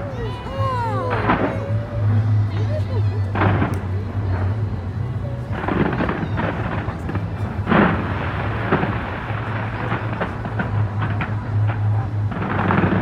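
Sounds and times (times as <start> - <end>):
fireworks booming: 5.5 - 13.0.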